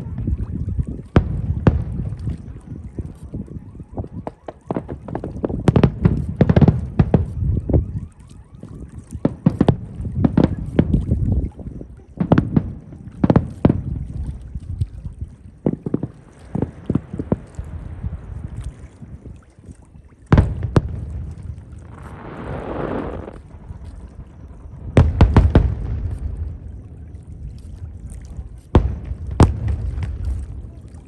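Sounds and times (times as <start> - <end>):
fireworks booms and cracks: 4.2 - 7.8, 9.2 - 11.0, 12.2 - 13.9, 15.6 - 18.2, 20.3 - 26.8, 28.7 - 30.8
low rumble: 20.6 - 31.0
loud firework bang: 21.9 - 23.5.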